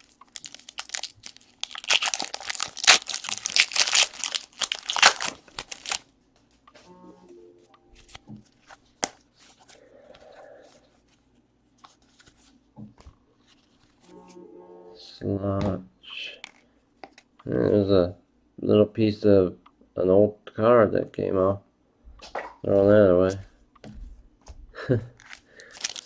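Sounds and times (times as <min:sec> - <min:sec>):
wrapper tearing and crinkling: 0:00.0 - 0:06.1, 0:25.2 - 0:26.0.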